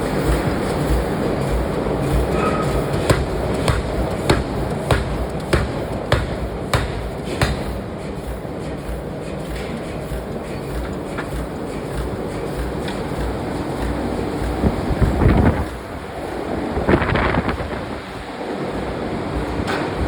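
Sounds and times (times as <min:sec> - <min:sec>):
workshop rumble: 0:00.0 - 0:20.0
hammer striking metal: 0:02.3 - 0:08.4.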